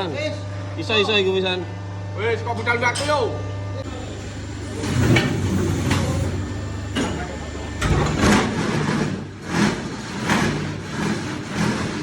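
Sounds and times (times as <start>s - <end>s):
machine noisy surges: 3.8s - 11.6s
engine hum: 3.8s - 12.0s.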